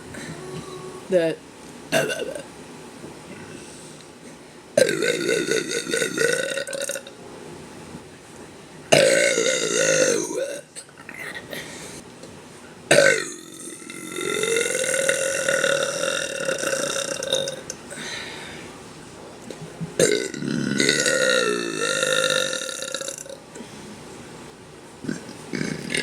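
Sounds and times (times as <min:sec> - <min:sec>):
woman burping: 0:01.1 - 0:02.4, 0:04.8 - 0:07.0, 0:09.0 - 0:11.7, 0:12.9 - 0:17.6, 0:20.0 - 0:23.3, 0:25.0 - 0:26.0.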